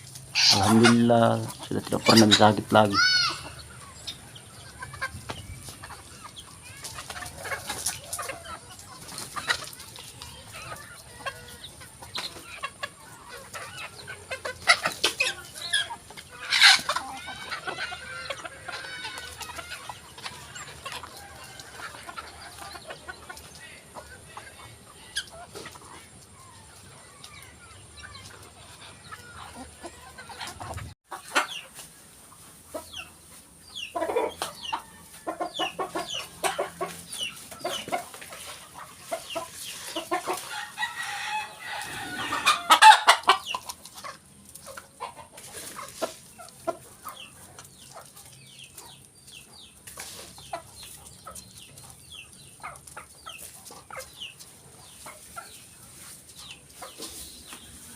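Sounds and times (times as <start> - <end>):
chickens clucking: 0.0 - 57.9
rooster crowing: 40.5 - 43.1.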